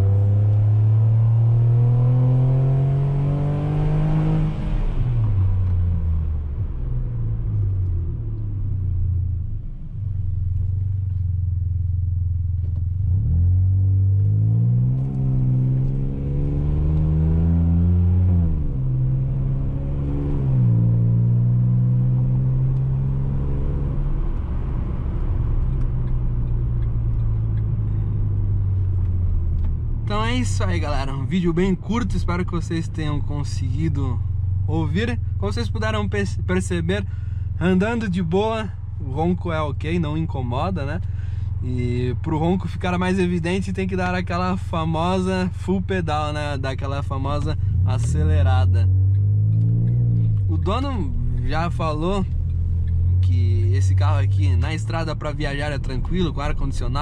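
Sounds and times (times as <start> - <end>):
car exhaust drone: 0.0 - 57.0.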